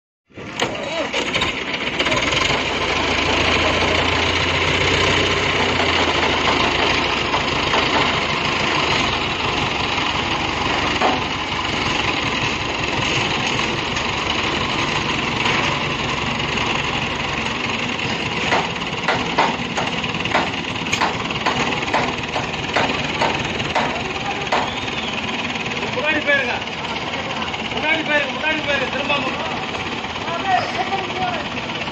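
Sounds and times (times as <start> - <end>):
heavy machine engine running: 0.3 - 31.9
sharp knocks and clanks: 5.4 - 25.2.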